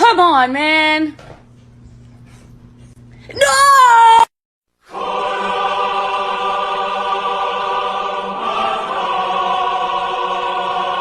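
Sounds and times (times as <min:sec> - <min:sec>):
choir singing sustained chord: 0:04.8 - 0:11.0.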